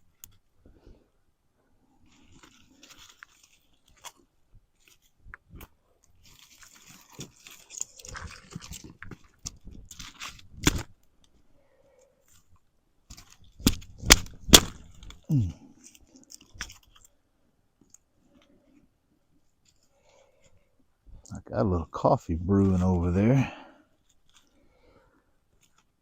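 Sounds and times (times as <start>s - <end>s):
campfire crackling: 13.1s - 17.0s.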